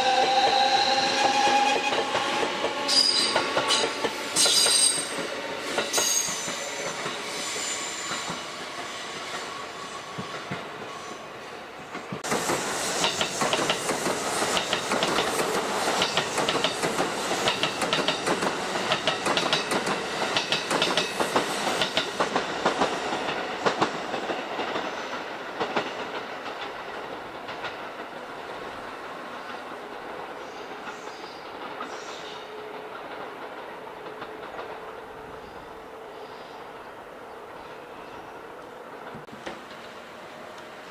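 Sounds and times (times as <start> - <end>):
train wheels clattering over rail joints: 11.9 - 35.5.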